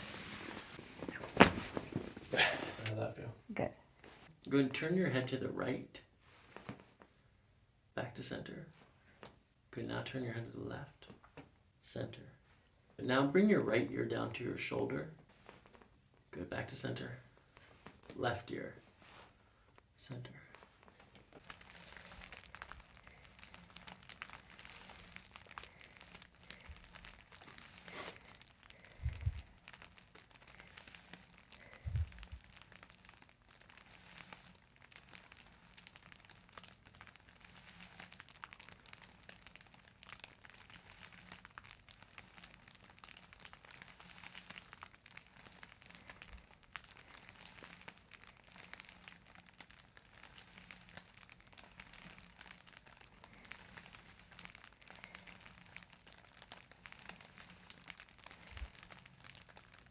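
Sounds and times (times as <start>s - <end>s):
faint rustling and crinkling: 0.0s - 7.4s, 8.3s - 59.9s.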